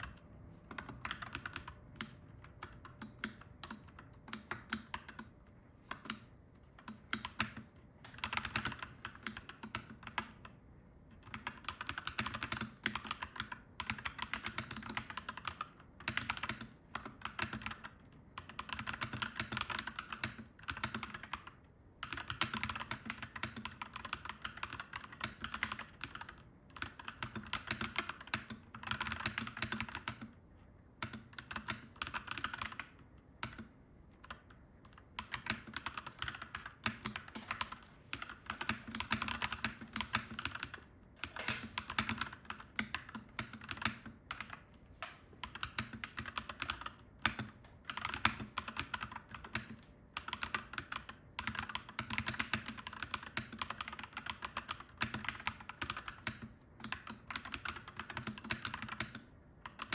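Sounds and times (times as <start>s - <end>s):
mechanical keyboard typing: 0.0s - 59.9s.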